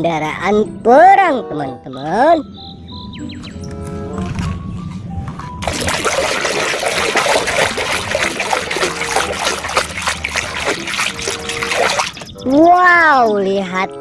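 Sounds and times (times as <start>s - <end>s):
running water splashing: 5.6s - 13.2s.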